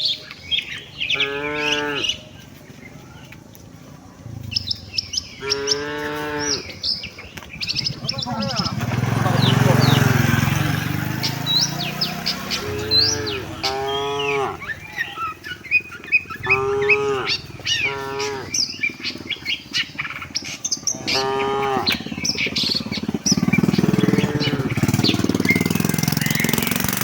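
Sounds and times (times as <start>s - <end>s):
bird chirps: 0.0s - 27.0s
cattle mooing: 1.1s - 2.2s, 5.4s - 6.8s, 12.5s - 15.4s, 16.3s - 18.7s, 20.9s - 22.0s, 23.9s - 24.8s
loud steady rattling: 7.8s - 13.6s, 21.7s - 27.0s.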